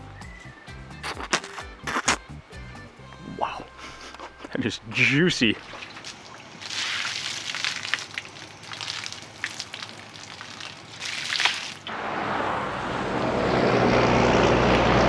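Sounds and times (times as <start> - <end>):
wet smacking of eating: 1.0 - 2.3
car road and wind noise: 11.9 - 15.0.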